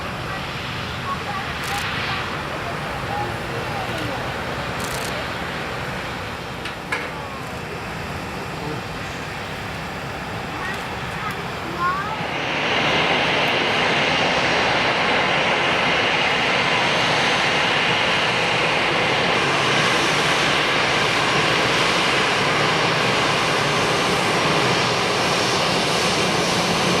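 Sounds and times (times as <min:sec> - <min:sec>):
jet engines running: 0:00.0 - 0:27.0.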